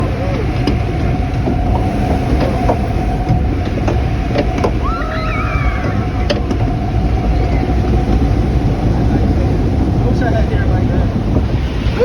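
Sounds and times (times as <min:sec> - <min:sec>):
waterfall rushing: 0:00.0 - 0:09.6
constant hum: 0:00.0 - 0:12.0.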